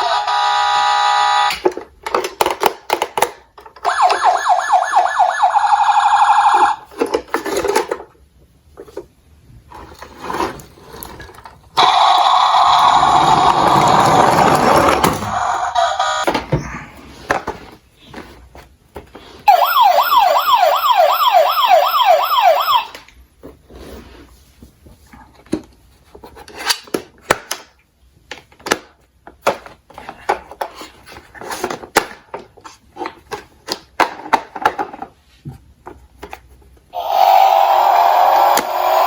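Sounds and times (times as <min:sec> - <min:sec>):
toy electronic siren yelping: 0:00.0 - 0:01.5, 0:03.9 - 0:06.8, 0:11.8 - 0:14.0, 0:15.3 - 0:16.2, 0:19.5 - 0:23.0, 0:37.0 - 0:39.0
toy cars clicking and rolling: 0:09.7 - 0:16.2.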